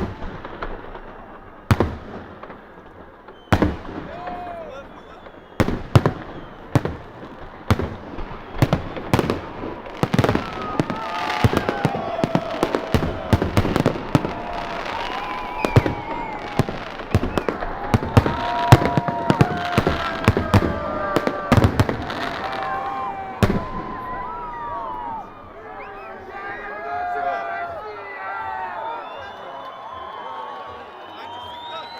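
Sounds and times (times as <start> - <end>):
fireworks crackle: 0.0 - 25.0
fireworks bangs: 0.0 - 26.5.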